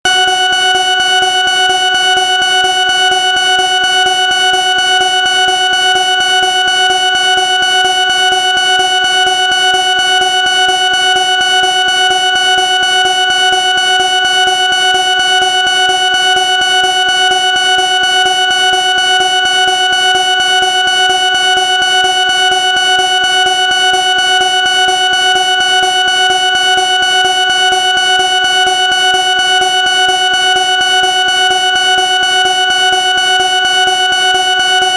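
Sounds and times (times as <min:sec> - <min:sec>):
smoke alarm steady tone: 0:00.0 - 0:34.9.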